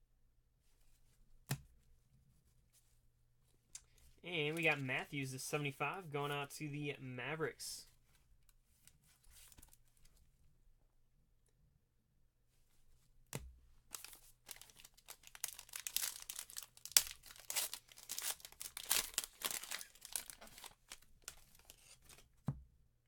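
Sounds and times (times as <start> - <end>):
packaging tearing and crinkling: 13.9 - 22.2.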